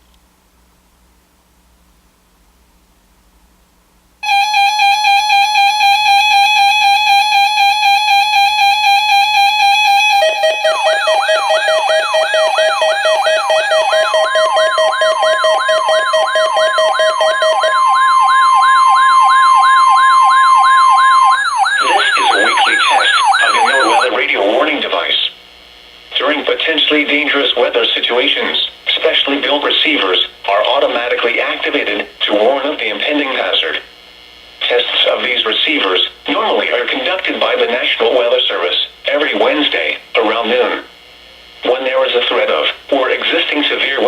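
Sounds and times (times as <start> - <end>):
rising warble siren: 4.2 - 24.1
steady alarm tones: 4.2 - 24.6
pulsing electronic beep: 8.5 - 24.1
announcer speaking: 9.1 - 20.3, 21.5 - 25.3, 26.2 - 33.8, 34.6 - 40.9, 41.6 - 44.0.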